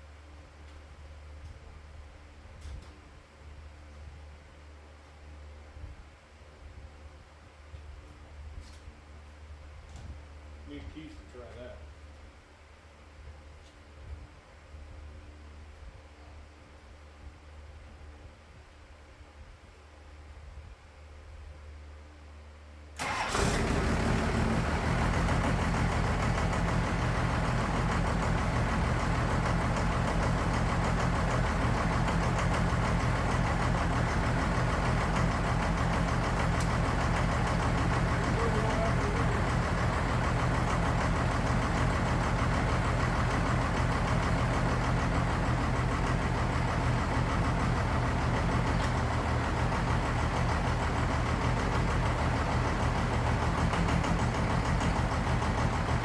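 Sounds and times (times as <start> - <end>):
diesel engine idling: 23.0 - 56.0.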